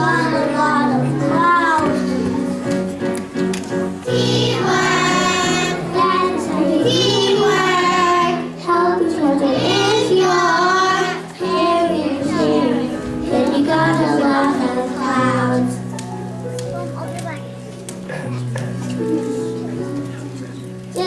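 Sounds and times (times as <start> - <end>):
children singing: 0.0 - 2.2, 4.0 - 15.9
musical accompaniment: 0.0 - 21.0.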